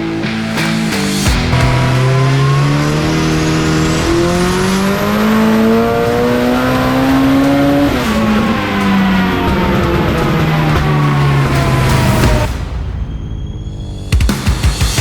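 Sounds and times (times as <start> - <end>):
high turbo whine: 0.0 - 14.2
turbocharged engine revving under load: 1.5 - 12.5.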